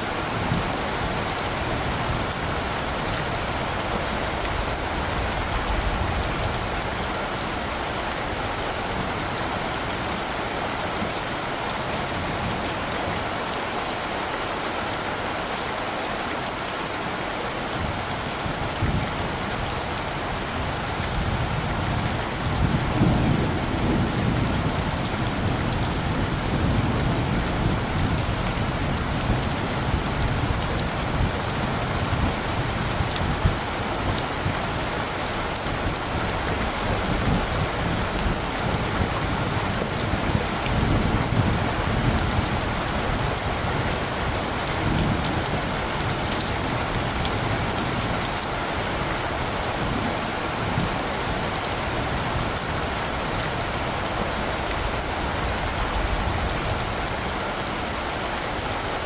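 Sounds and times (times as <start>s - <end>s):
steady rain: 0.0s - 59.0s
thunder rumbling: 17.8s - 57.4s.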